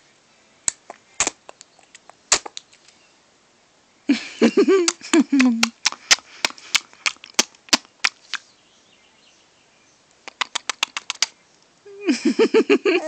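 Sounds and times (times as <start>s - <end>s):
baby making sucking clicks: 4.9s - 8.4s, 10.2s - 11.3s.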